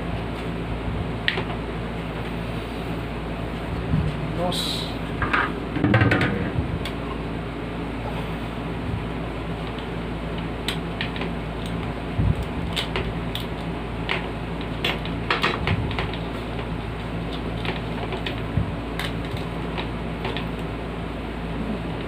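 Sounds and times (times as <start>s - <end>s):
steady low hum: 0.0s - 22.0s
clicks of plastic fan parts: 1.2s - 1.6s, 5.2s - 7.1s, 9.6s - 16.7s, 17.3s - 20.7s.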